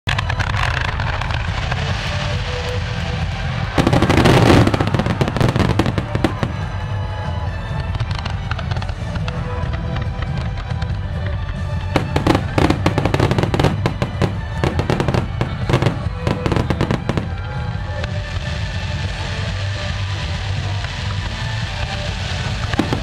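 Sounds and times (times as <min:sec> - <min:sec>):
fireworks crackling and popping: 0:00.0 - 0:23.0
background music: 0:00.1 - 0:23.0.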